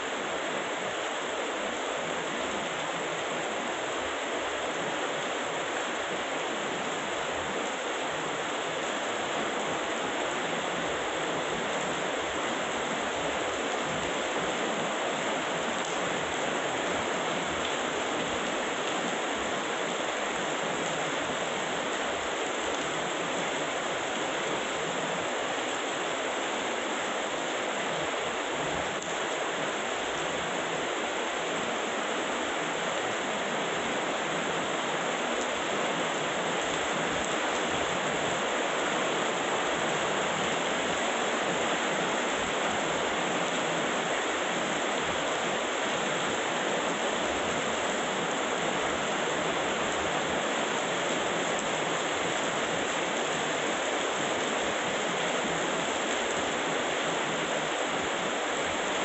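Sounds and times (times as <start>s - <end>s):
heavy rain falling: 0.0s - 59.0s.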